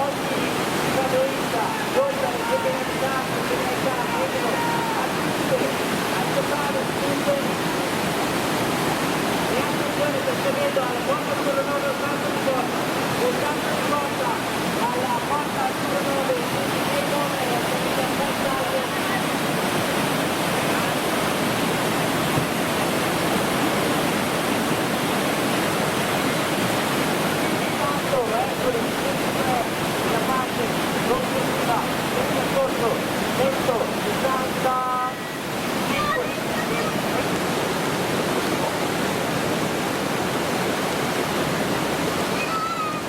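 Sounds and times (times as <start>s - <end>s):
whitewater rapids rushing: 0.0s - 43.0s.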